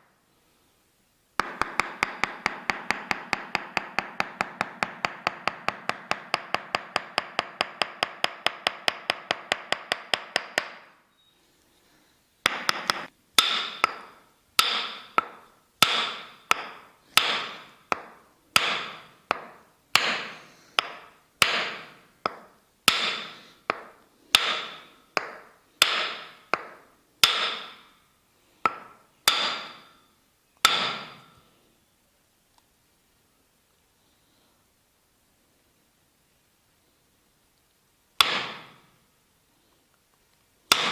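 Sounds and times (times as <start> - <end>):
wooden mallet tapping wooden wedge: 1.4 - 11.0, 12.4 - 27.9, 28.6 - 29.9, 30.6 - 31.4, 38.2 - 38.8.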